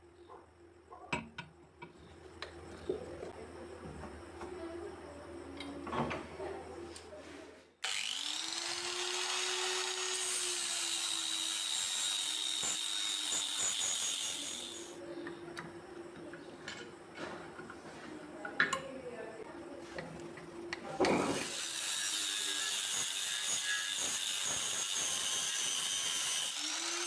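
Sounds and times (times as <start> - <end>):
power tool motor whine: 7.8 - 15.0
tool grinding steel hiss: 7.8 - 15.0, 21.3 - 27.0.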